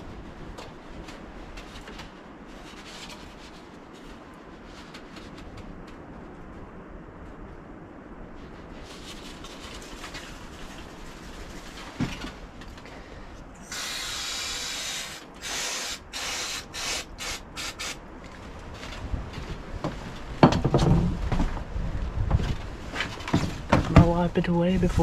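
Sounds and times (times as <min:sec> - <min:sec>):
aerosol spray hissing: 0:13.6 - 0:18.0.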